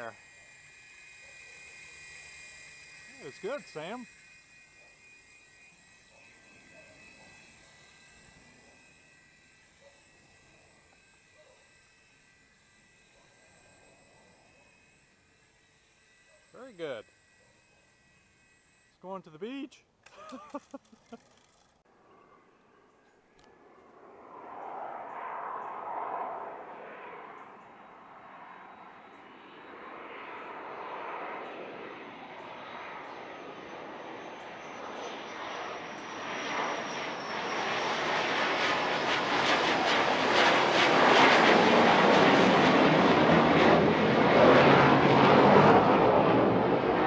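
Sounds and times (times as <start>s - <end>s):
thin high whistle: 0.0s - 11.7s
jet engine flying over: 0.0s - 17.0s, 21.9s - 47.0s.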